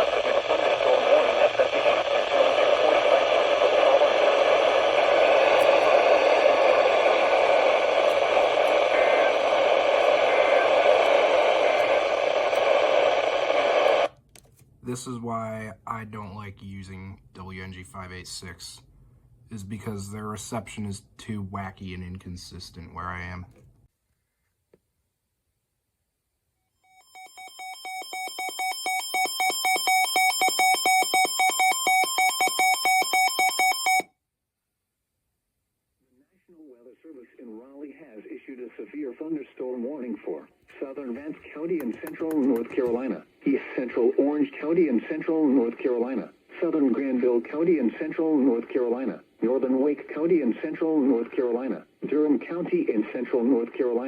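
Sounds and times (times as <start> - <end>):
radio static hiss: 0.0 - 14.2, 36.2 - 54.0
two-tone electronic alarm beeping: 26.9 - 34.1.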